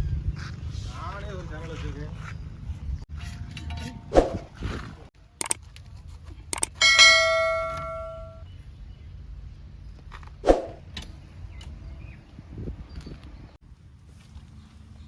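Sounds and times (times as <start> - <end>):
bell-like metallic strike: 6.8 - 8.4.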